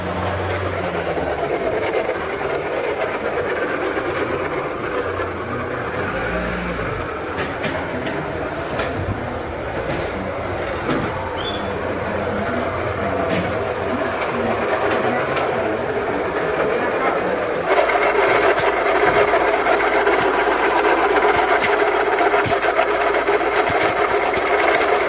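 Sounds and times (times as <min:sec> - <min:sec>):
car engine running: 0:00.0 - 0:25.0
metal rubbing on metal: 0:17.7 - 0:25.0.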